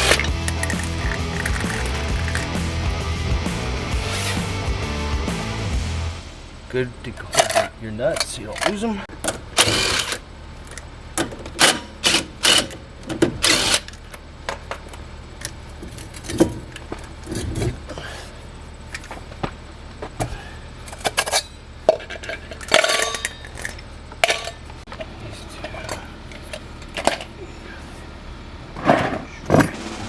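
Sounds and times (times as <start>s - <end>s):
metal tools clinking and clanking: 22.1s - 24.6s.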